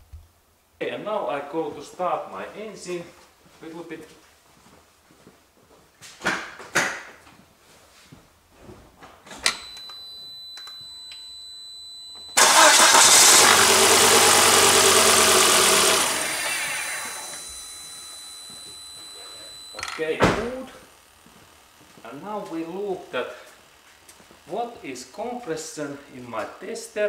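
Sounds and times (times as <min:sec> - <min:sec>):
faint high whine: 0:09.3 - 0:27.0
car engine cranking: 0:12.4 - 0:18.0.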